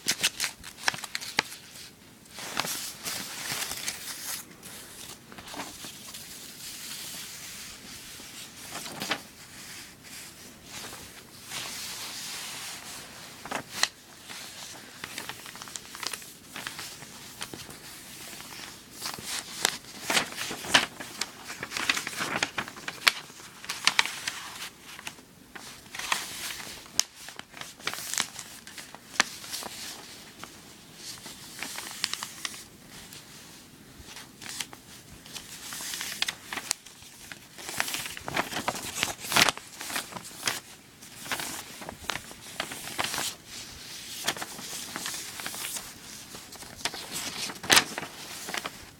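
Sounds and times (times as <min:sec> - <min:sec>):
paper rustling and crinkling: 0:00.0 - 0:48.9.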